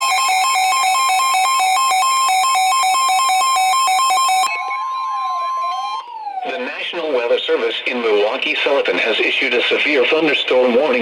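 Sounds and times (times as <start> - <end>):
warbling siren alarm tone: 0.0 - 6.5.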